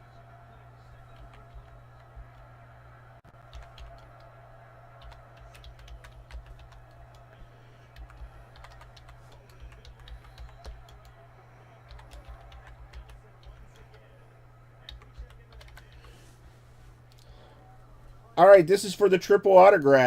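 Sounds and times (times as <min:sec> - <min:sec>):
computer keyboard typing: 0:01.1 - 0:02.4, 0:03.4 - 0:04.3, 0:04.9 - 0:14.1, 0:14.8 - 0:16.2.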